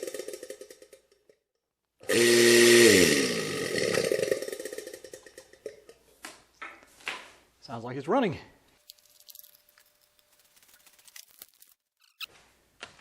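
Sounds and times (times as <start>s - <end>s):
vacuum pump motor running: 2.0s - 4.8s.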